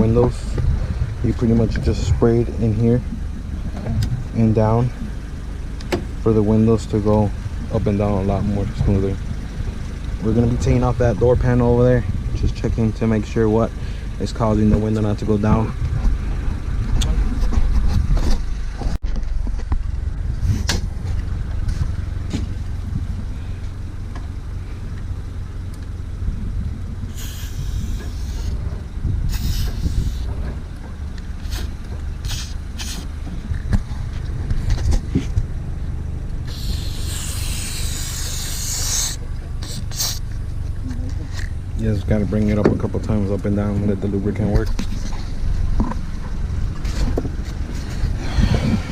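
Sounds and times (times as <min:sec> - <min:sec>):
low rumble: 0:00.0 - 0:48.9
aerosol can spraying: 0:27.2 - 0:28.5, 0:29.3 - 0:30.3, 0:31.4 - 0:33.1, 0:36.5 - 0:40.2.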